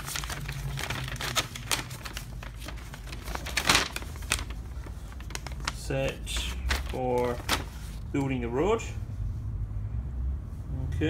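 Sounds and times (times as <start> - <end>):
paper rustling and crinkling: 0.0 - 8.5.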